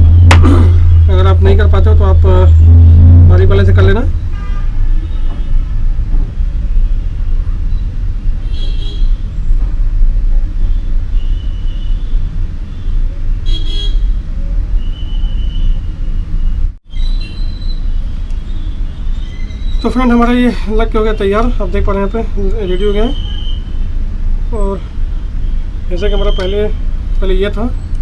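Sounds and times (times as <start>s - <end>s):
road traffic rumble: 0.0s - 28.0s
vehicle horn toots: 2.2s - 5.9s, 8.4s - 9.3s, 13.4s - 14.1s.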